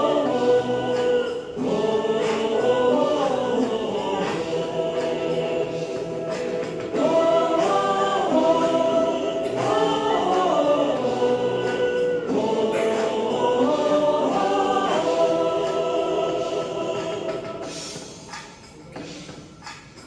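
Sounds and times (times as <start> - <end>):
choir singing: 0.0 - 18.4.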